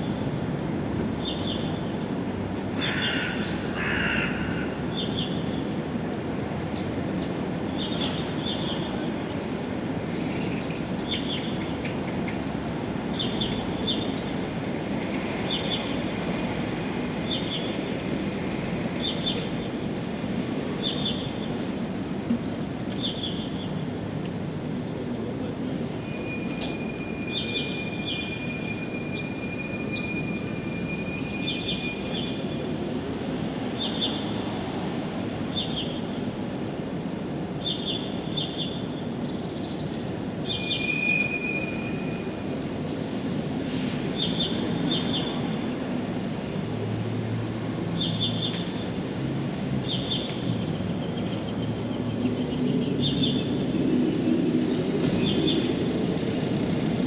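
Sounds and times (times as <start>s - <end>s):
songbird high chirps: 26.0s - 32.4s, 37.4s - 42.3s, 47.4s - 53.5s.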